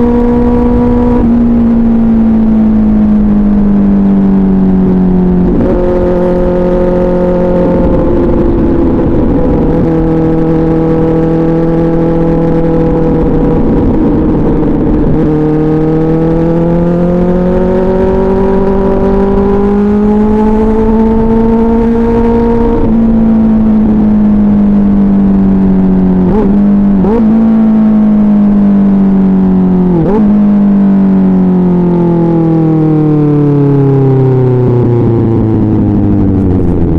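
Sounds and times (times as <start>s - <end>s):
motorcycle engine running: 0.0s - 36.9s.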